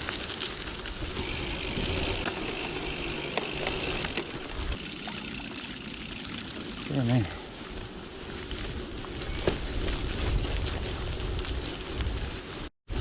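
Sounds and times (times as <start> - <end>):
bike clicks and rattles: 0.0 - 6.8.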